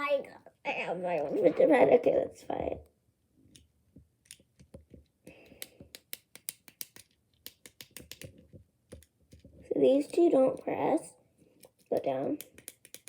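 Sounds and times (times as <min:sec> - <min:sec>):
fidget pad buttons clicking: 0:05.4 - 0:09.1, 0:11.9 - 0:13.0.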